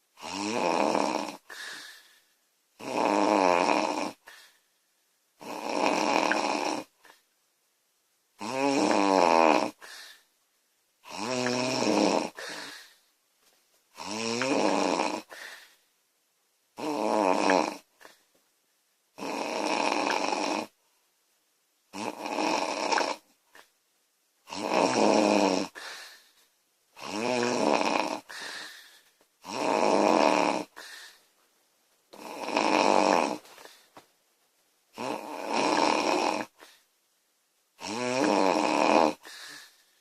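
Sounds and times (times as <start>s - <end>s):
woman snoring: 0.2s - 2.0s, 2.8s - 4.4s, 5.4s - 7.2s, 8.4s - 10.2s, 11.0s - 13.0s, 14.0s - 15.7s, 16.8s - 18.1s, 19.2s - 20.8s, 21.9s - 23.7s, 24.5s - 26.2s, 27.0s - 31.0s, 32.2s - 33.8s, 34.9s - 36.8s, 37.8s - 39.8s
soft breath: 1.4s - 2.4s, 4.2s - 4.8s, 9.8s - 10.4s, 12.3s - 13.1s, 15.2s - 15.9s, 25.7s - 26.5s, 28.2s - 29.3s, 30.7s - 31.5s, 33.4s - 34.1s, 36.5s - 37.0s, 39.2s - 40.0s.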